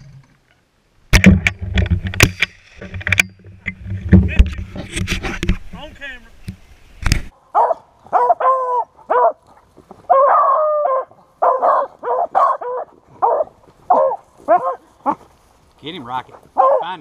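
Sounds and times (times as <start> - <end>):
beagles barking and baying: 7.5 - 15.4, 16.3 - 17.0.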